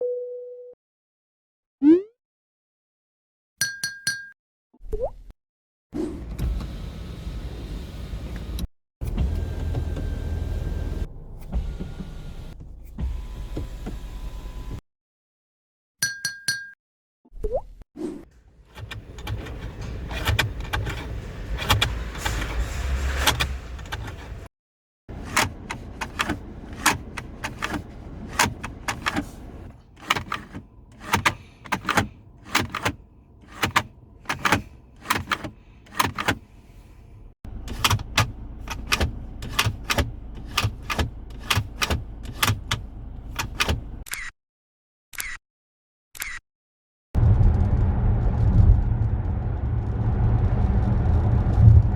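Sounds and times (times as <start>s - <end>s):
low road rumble in cabin: 6.0s - 14.8s, 18.4s - 24.5s, 25.1s - 44.0s, 47.2s - 51.9s
car interior ticking rattles: 25.1s - 36.4s, 37.5s - 44.0s.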